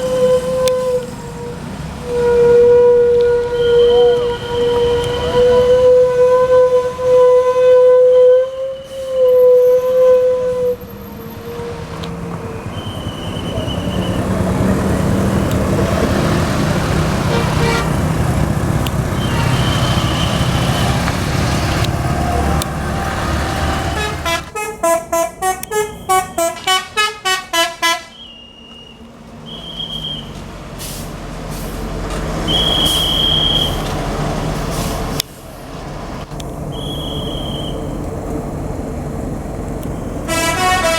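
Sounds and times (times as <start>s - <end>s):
steady bus horn note: 0.0s - 10.8s, 17.1s - 18.1s, 19.2s - 21.1s, 22.3s - 28.3s, 40.2s - 40.9s
multi-tone musical bus horn: 0.0s - 11.8s, 16.7s - 18.2s, 19.1s - 28.9s, 32.5s - 33.9s, 40.2s - 40.9s
diesel bus engine rumbling: 0.0s - 40.9s.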